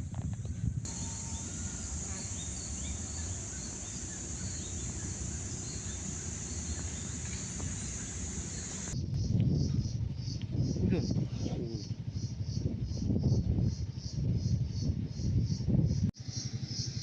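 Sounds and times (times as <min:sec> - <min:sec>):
faint chirps: 0:00.9 - 0:09.0
insects buzzing high: 0:00.9 - 0:09.0
low steady background noise: 0:00.9 - 0:09.0.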